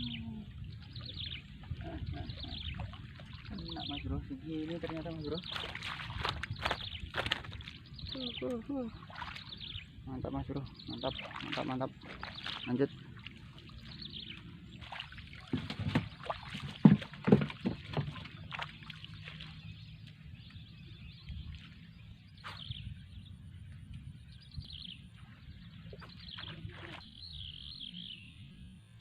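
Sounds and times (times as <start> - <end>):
water sloshing and splashing: 0.0 - 22.7, 25.1 - 27.2
sharp knocks: 15.5 - 18.2.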